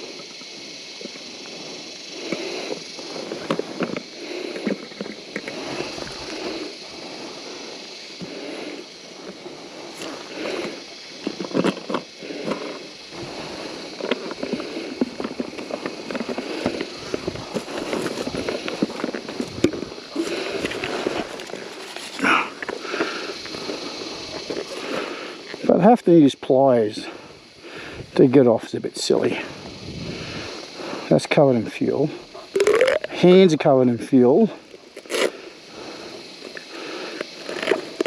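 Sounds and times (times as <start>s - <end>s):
scraping and rustling: 9.3s - 25.1s.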